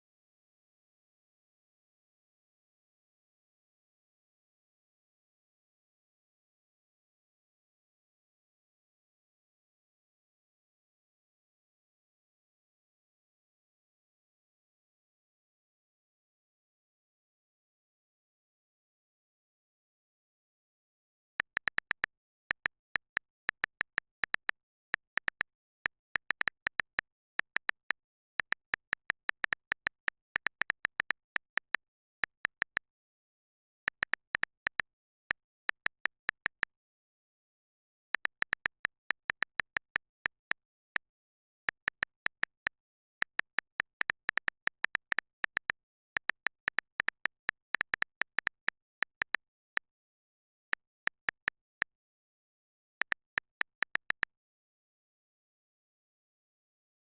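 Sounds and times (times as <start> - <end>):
phone keyboard clicks: 21.4 - 33.0, 33.6 - 36.7, 37.8 - 51.9, 52.8 - 54.3.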